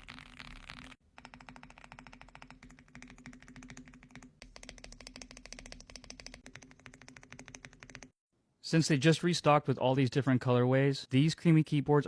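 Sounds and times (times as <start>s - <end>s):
fast typing on mechanical keyboard: 0.5s - 8.2s.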